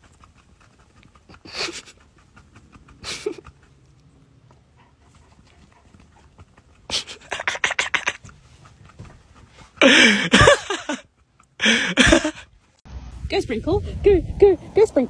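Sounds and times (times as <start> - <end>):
dog panting: 0.0 - 12.8.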